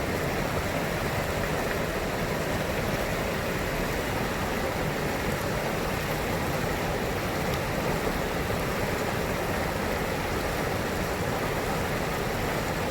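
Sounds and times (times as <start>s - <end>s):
river water rushing: 0.0s - 12.9s.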